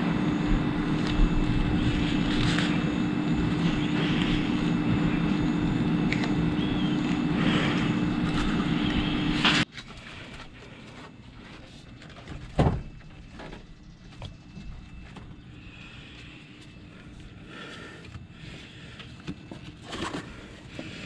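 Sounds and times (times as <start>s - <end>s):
loud steady drone with low hum: 0.0s - 9.7s.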